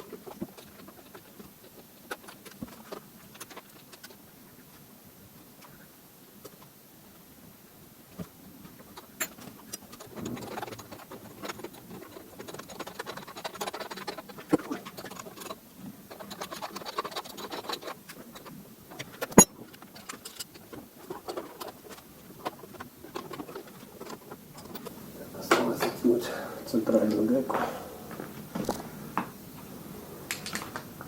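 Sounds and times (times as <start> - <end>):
parts and tools being handled: 0.0 - 5.8, 8.1 - 26.0.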